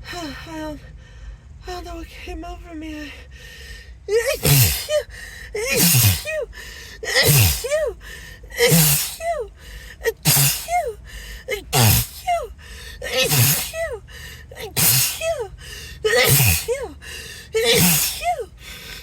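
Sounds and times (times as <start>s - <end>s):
gasping in-breath: 3.2s - 19.0s
person sneezing: 4.2s - 14.0s, 14.6s - 19.0s.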